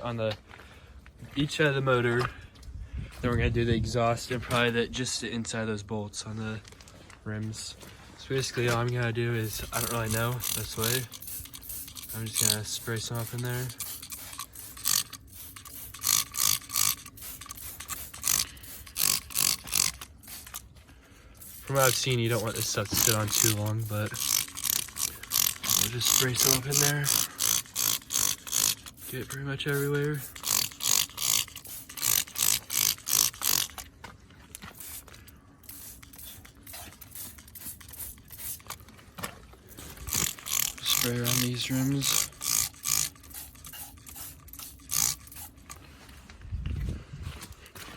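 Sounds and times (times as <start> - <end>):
spray bottle hissing: 9.4 - 20.7, 21.4 - 33.8, 34.7 - 38.8, 39.8 - 45.8.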